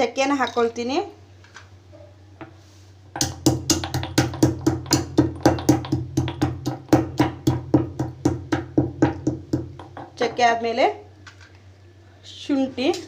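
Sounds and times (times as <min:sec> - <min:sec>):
faint steady hum: 0:00.0 - 0:13.0
pestle striking mortar: 0:03.2 - 0:10.4.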